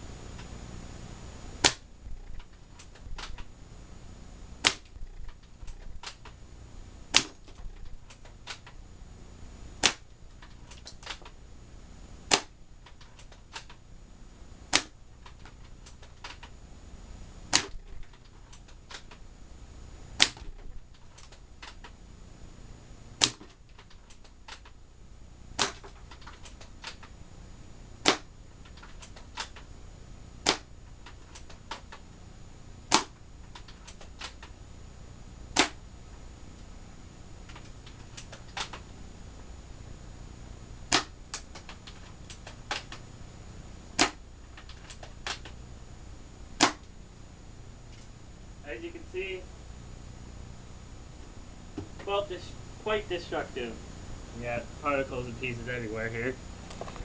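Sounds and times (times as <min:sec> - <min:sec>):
airsoft rifle shots: 0:01.6 - 0:03.4, 0:04.6 - 0:06.3, 0:07.1 - 0:08.7, 0:09.8 - 0:11.3, 0:12.3 - 0:12.6, 0:14.7 - 0:15.0, 0:17.5 - 0:18.1, 0:23.2 - 0:23.6, 0:25.6 - 0:27.0, 0:28.0 - 0:28.3, 0:30.4 - 0:30.7, 0:32.9 - 0:33.2, 0:35.5 - 0:35.8, 0:40.9 - 0:41.2, 0:44.0 - 0:44.2, 0:46.6 - 0:46.9.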